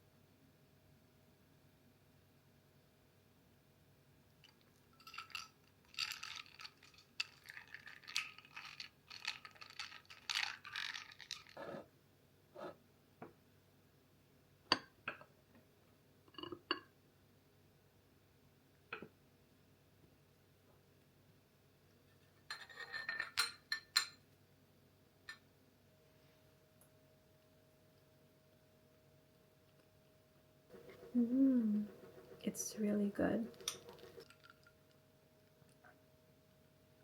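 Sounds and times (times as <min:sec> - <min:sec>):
dishes clinking: 0:22.4 - 0:24.2, 0:33.5 - 0:34.5
crackly scraping and rustling: 0:30.7 - 0:35.8.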